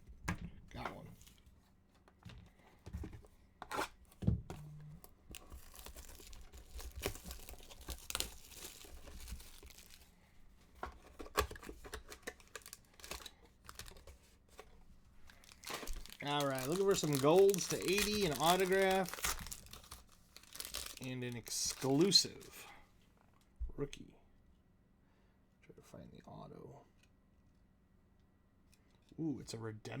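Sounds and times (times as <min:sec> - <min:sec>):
packaging torn and crinkled: 0:05.3 - 0:10.1, 0:11.3 - 0:14.2, 0:15.2 - 0:22.6.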